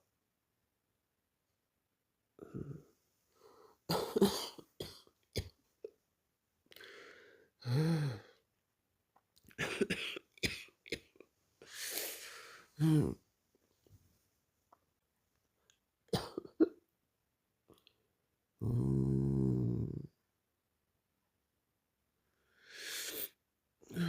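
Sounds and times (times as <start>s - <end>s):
man hiccuping: 12.8s - 13.2s.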